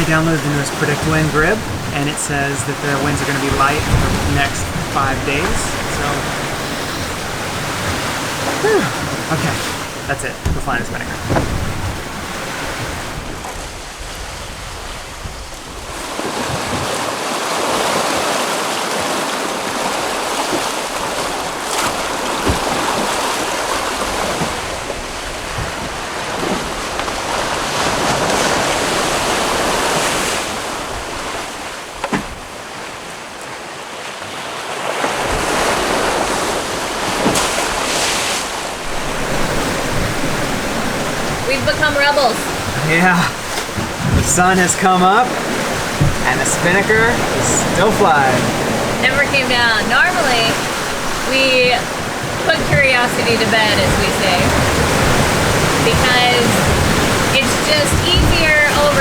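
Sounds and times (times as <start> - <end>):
faint knocks: 0.0 - 12.4
wind buffeting microphone: 0.0 - 17.0, 35.2 - 59.0
waves and rushing water: 0.0 - 59.0.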